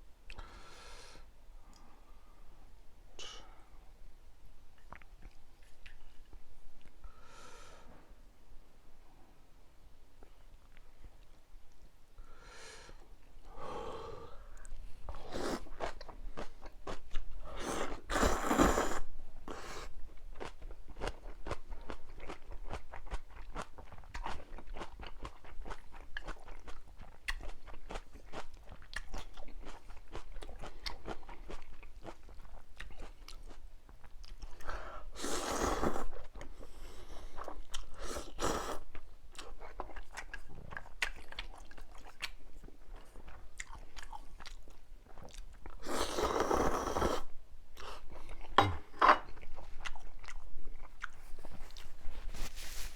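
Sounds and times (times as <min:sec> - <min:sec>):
wet chewing and crunching: 0:20.3 - 0:34.6, 0:37.4 - 0:45.8, 0:49.3 - 0:52.0.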